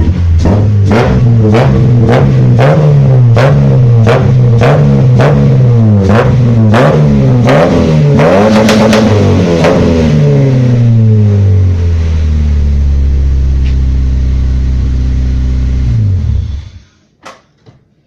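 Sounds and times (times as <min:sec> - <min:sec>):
car engine idling: 0:10.4 - 0:16.9.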